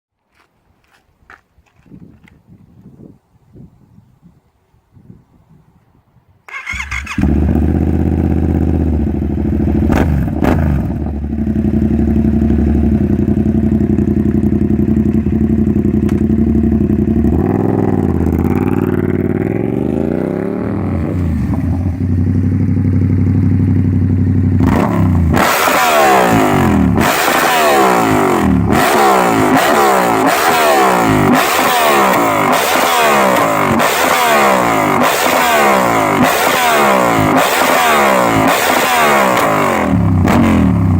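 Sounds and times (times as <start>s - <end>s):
motorcycle engine revving: 6.5s - 40.9s
motorcycle engine idling: 6.6s - 25.6s.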